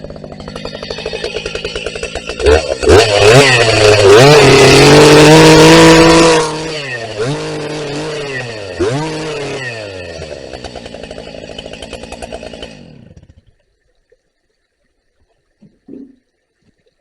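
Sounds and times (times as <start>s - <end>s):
chainsaw idling and revving: 0.0s - 13.5s.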